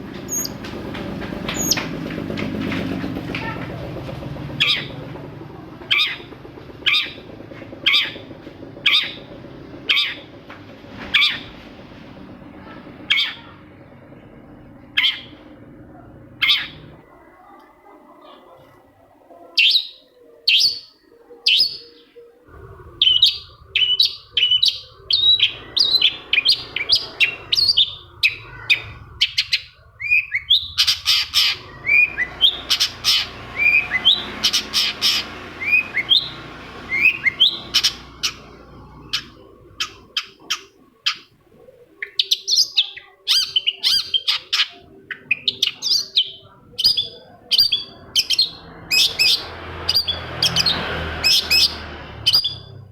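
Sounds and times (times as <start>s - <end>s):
bird singing sharp chirps: 23.0s - 41.3s.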